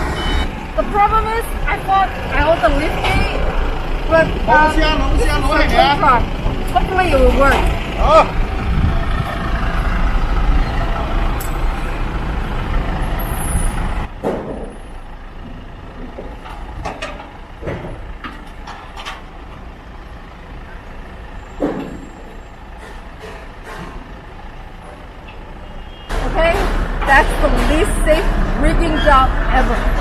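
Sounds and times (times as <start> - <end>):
truck engine running: 0.0 - 30.0
sharp knocks: 14.2 - 14.8.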